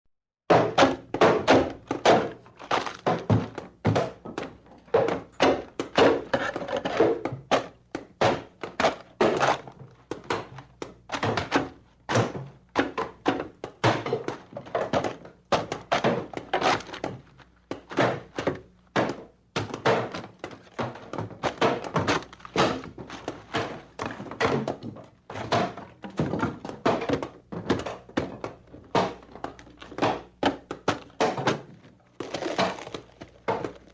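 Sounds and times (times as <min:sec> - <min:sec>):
wood cracking and breaking: 0:30.8 - 0:33.9.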